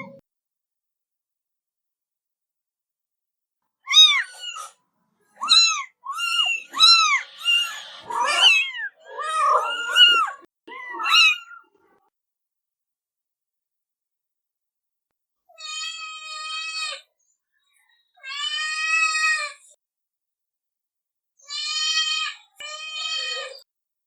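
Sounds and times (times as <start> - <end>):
cat meowing: 3.9 - 4.8, 5.4 - 11.8, 21.4 - 23.6.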